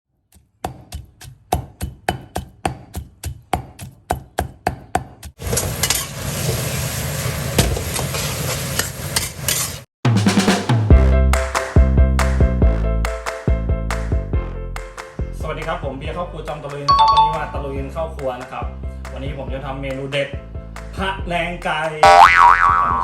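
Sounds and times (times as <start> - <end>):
food sizzling in a hot pan: 5.4 - 9.9.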